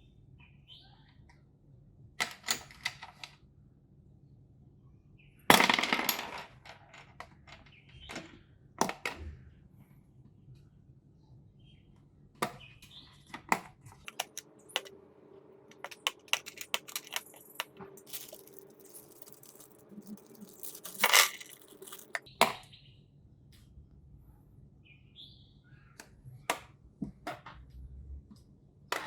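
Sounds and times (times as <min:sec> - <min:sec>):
plastic chess pieces clicking: 0:14.0 - 0:14.9, 0:15.7 - 0:22.3
rustling: 0:15.7 - 0:22.3.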